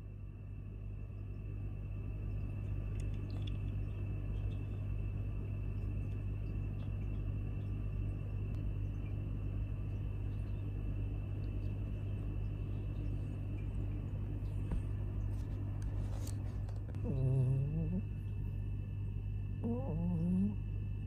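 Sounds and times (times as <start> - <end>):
cat snoring: 17.0 - 18.1, 19.6 - 20.6.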